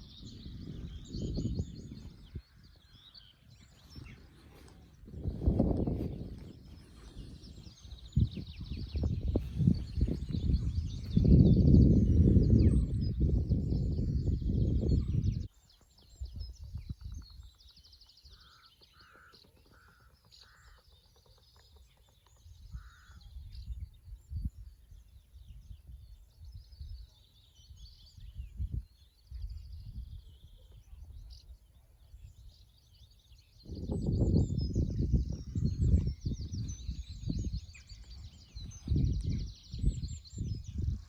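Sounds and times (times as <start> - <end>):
birds singing: 0.0 - 41.0
wind buffeting microphone: 0.0 - 41.0
short lower bird calls: 18.2 - 21.0.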